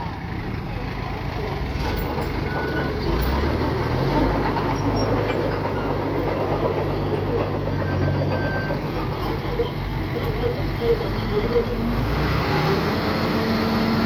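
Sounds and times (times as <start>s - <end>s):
bulldozer diesel engine: 0.0s - 14.0s
steel tracks clattering: 1.6s - 12.6s.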